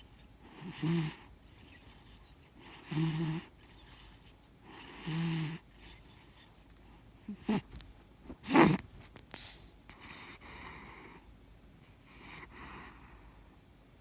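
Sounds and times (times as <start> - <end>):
cat snoring: 0.0 - 6.5, 8.4 - 8.8, 10.0 - 11.2, 12.1 - 13.4.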